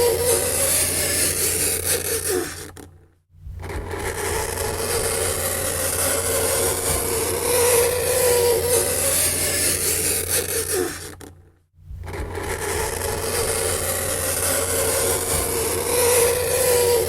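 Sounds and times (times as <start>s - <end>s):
fingernails scraping chalkboard: 12.4s - 17.0s.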